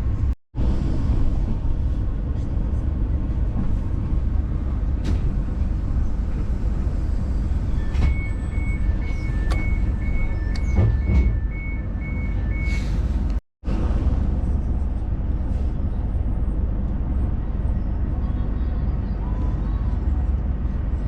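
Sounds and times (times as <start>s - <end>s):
train rumbling: 0.0s - 21.0s
two-tone electronic warning beep: 7.8s - 12.8s.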